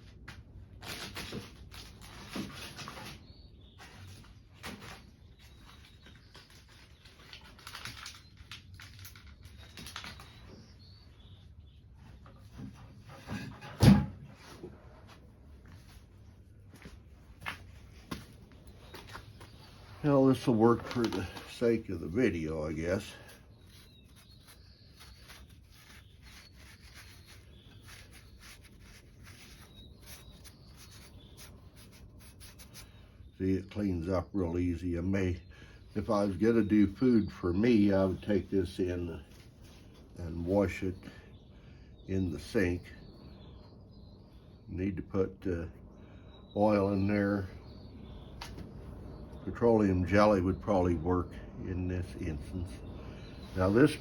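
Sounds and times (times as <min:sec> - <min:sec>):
small objects clicking and rustling: 0:05.9 - 0:10.4
faint rubbing strokes on metal: 0:22.8 - 0:33.0.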